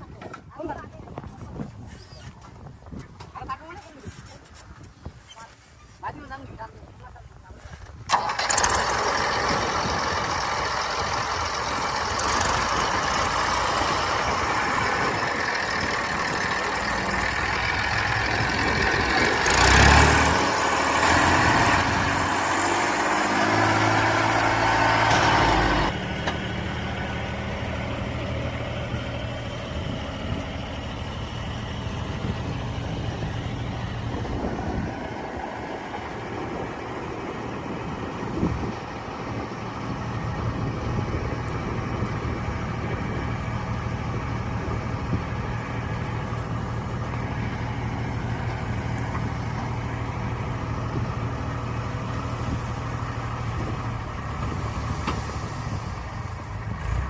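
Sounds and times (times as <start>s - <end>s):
heavy machinery diesel engine: 8.0s - 57.0s.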